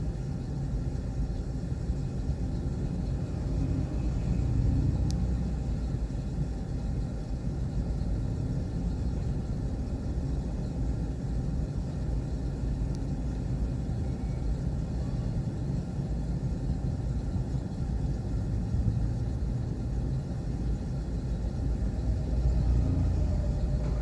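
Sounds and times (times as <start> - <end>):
diesel engine low rumble: 0.0 - 24.0.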